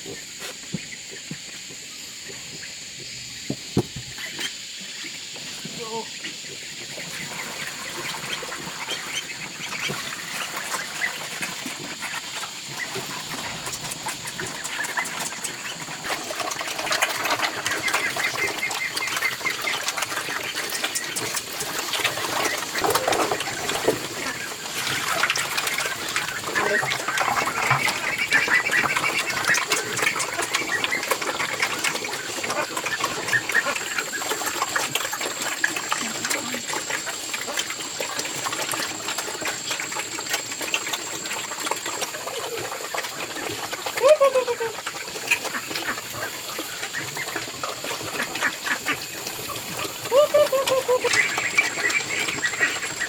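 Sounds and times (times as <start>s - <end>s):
poultry calling: 25.8s - 37.2s, 41.9s - 53.0s.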